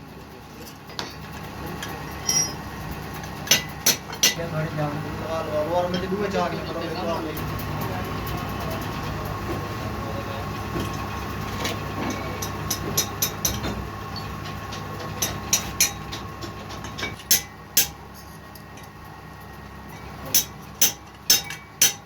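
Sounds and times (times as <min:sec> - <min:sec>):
machine humming: 0:01.3 - 0:22.0
sharp metallic clicks and knocks: 0:10.7 - 0:19.0, 0:19.9 - 0:22.0.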